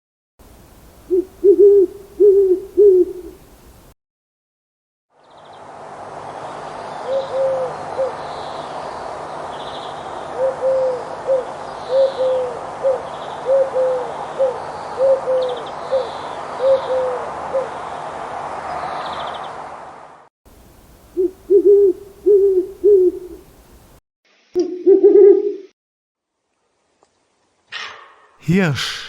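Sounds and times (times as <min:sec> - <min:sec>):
owl hooting: 0:01.1 - 0:03.4, 0:10.4 - 0:17.6, 0:21.2 - 0:23.4.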